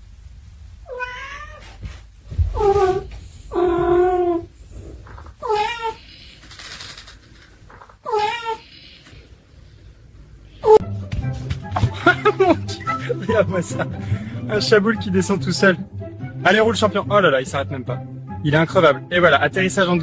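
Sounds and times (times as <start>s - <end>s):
cat meowing: 0.9s - 1.8s, 5.4s - 6.3s, 8.0s - 9.1s.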